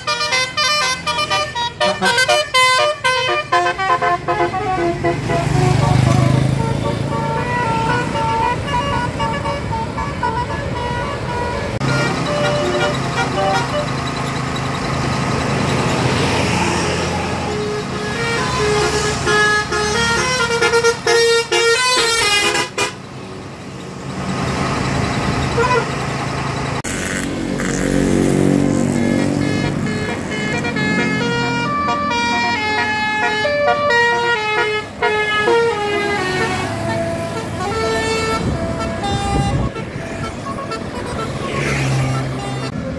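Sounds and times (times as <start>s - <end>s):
multi-tone air horn melodies: 0.0s - 13.9s, 17.2s - 23.0s, 25.6s - 25.9s, 28.8s - 42.8s
vehicle engine: 0.0s - 42.9s.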